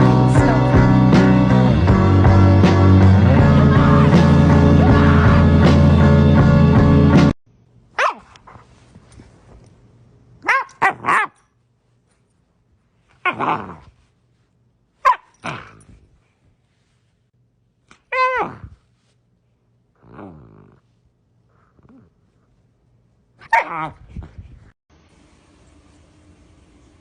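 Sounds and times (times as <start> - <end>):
background music: 0.0 - 7.4
dog barking: 8.0 - 8.6, 10.4 - 11.4, 15.0 - 15.4, 23.4 - 24.0.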